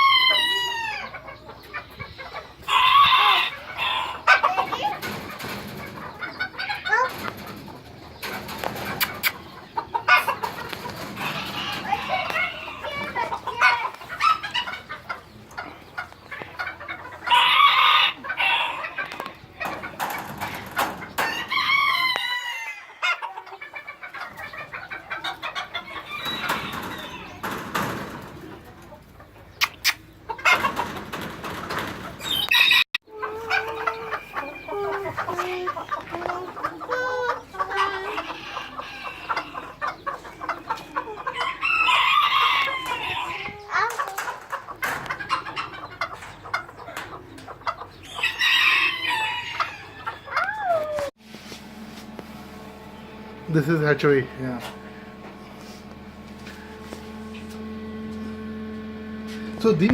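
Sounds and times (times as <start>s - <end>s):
rooster crowing: 0.0s - 1.1s, 2.7s - 4.5s, 17.2s - 19.3s, 21.2s - 23.2s, 25.8s - 27.5s, 32.2s - 35.1s, 37.8s - 39.7s, 41.3s - 43.5s, 48.1s - 51.1s
chickens clucking: 0.0s - 59.9s.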